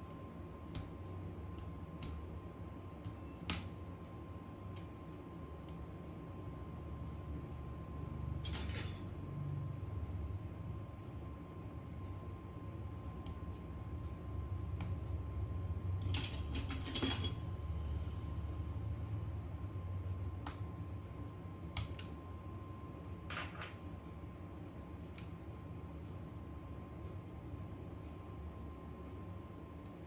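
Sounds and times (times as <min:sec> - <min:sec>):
steady low hum: 0:00.0 - 0:30.0
metal tools clinking: 0:08.4 - 0:09.1, 0:16.0 - 0:17.4.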